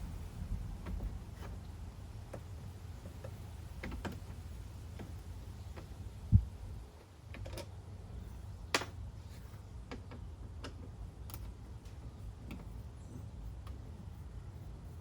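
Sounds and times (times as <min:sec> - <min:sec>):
steady low hum: 0:00.0 - 0:03.8.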